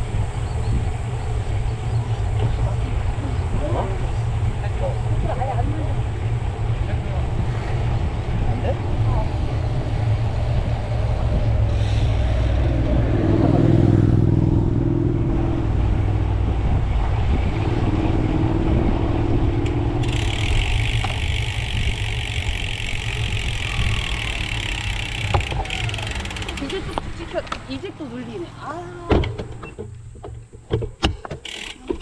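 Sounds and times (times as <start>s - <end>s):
wind rushing over microphone: 0.0s - 28.6s
motor vehicle engine running: 0.0s - 30.7s
bicycle freewheel ratcheting: 9.2s - 12.3s, 20.0s - 27.8s, 31.4s - 32.0s.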